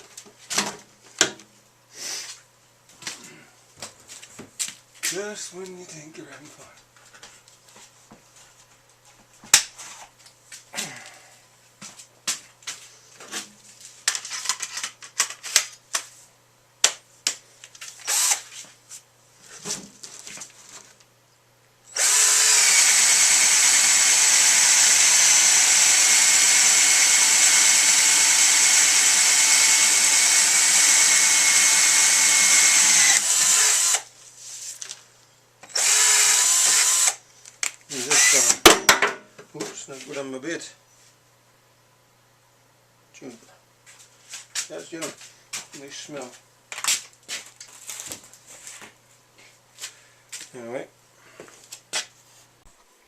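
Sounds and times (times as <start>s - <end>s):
drill boring into a log: 18.0s - 18.4s, 21.9s - 34.1s, 35.7s - 37.2s, 38.0s - 38.6s.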